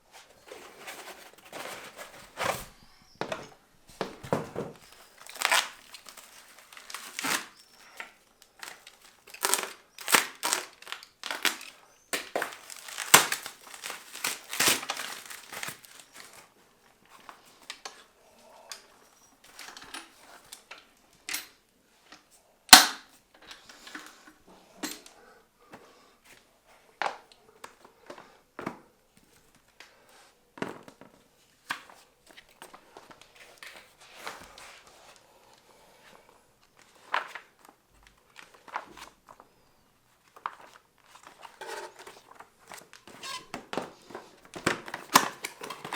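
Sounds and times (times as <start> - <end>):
handling clicks and rustles: 0.2 - 16.5, 40.3 - 45.9
packaging crinkling and tearing: 4.3 - 16.5, 40.3 - 45.9.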